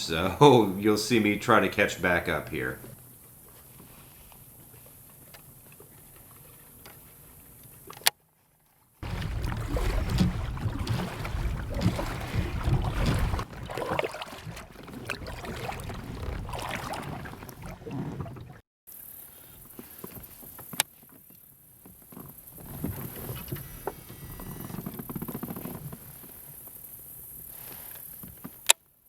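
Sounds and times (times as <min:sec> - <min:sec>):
water splashing against kayak hull: 0:00.0 - 0:28.7
faint ticks: 0:02.8 - 0:08.2
low rumble: 0:09.0 - 0:13.8.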